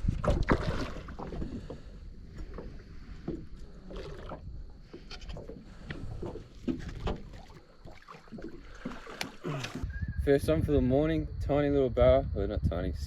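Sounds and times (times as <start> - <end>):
knocks and rustles in metal boat: 0.0 - 9.9.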